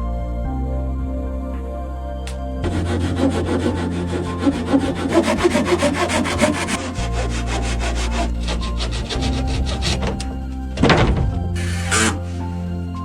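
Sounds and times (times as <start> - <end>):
hand saw cutting timber: 2.6 - 10.4, 11.6 - 12.4.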